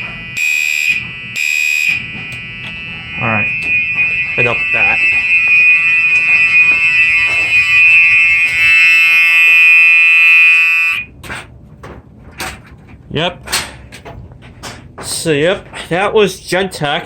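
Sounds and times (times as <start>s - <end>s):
electronic fire alarm horn: 0.0s - 11.2s.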